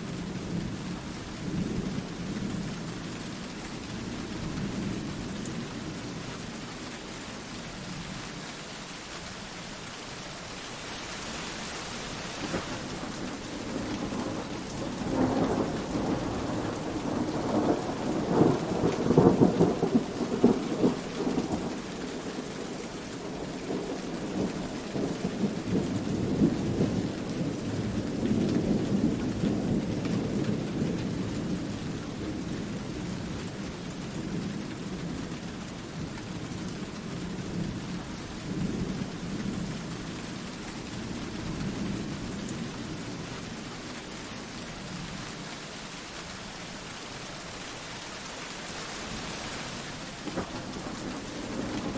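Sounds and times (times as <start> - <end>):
steady rain falling: 0.0 - 51.9
thunder rolling: 12.3 - 21.6, 50.2 - 51.9.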